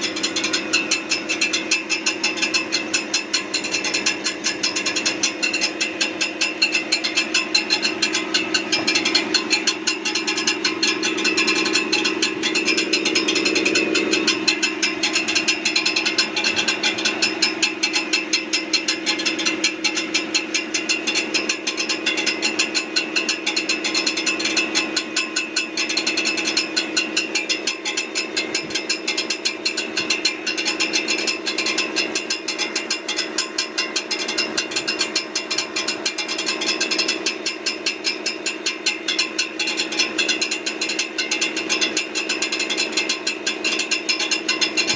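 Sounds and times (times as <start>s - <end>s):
fast regular clicking and clanking: 0.0s - 44.9s
truck engine humming: 0.0s - 44.9s.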